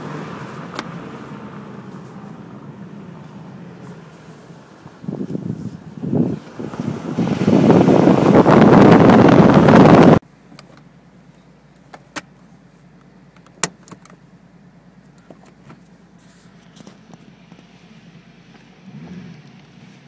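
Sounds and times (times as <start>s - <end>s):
loud rush of noise: 5.9s - 10.2s.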